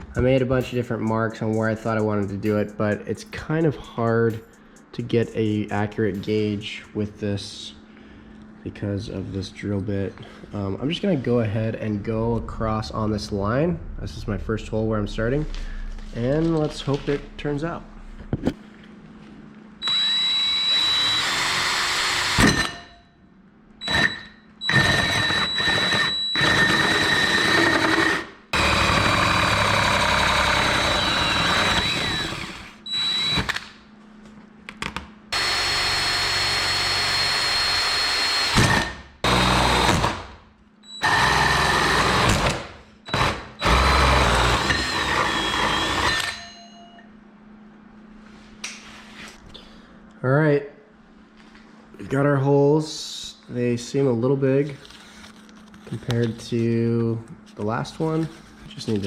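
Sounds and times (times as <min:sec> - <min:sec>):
power drill boring: 0:19.8 - 0:22.8, 0:23.8 - 0:33.6, 0:35.4 - 0:40.2, 0:40.9 - 0:46.5.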